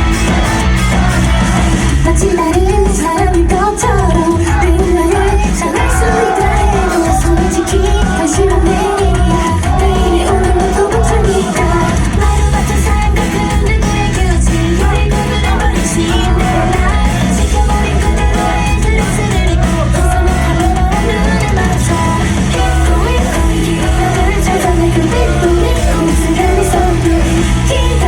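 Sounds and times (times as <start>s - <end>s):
live pop song with singing: 0.0s - 28.0s.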